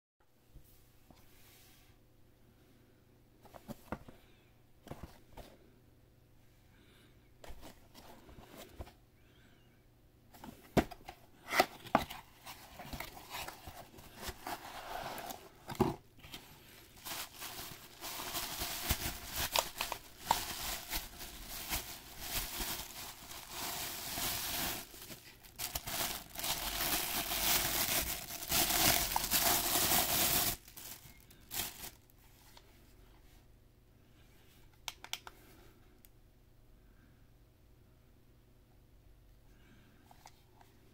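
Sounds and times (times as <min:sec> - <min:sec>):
wrapping crinkling and tearing: 0:16.3 - 0:32.1.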